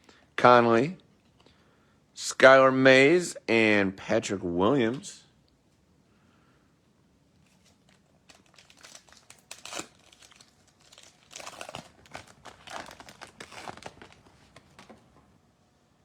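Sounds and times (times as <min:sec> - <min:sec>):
plastic wrapper crackling rips: 0:07.4 - 0:15.2.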